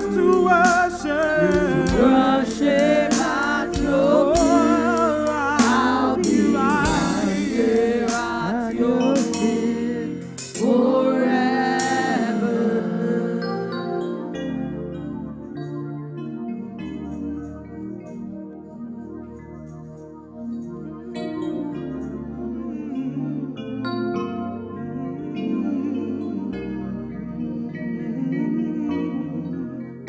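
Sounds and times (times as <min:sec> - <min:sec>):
band accompaniment: 0:00.0 - 0:10.7
voices singing gospel: 0:00.0 - 0:15.1, 0:21.8 - 0:30.0.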